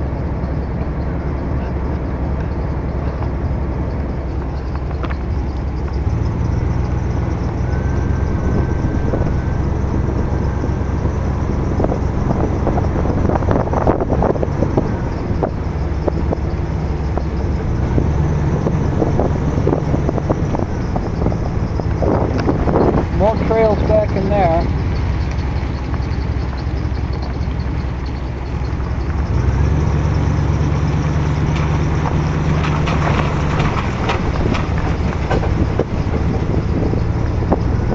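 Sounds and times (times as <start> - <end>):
car engine and road hum: 0.0 - 37.9
light clicks and crackles: 31.5 - 36.2.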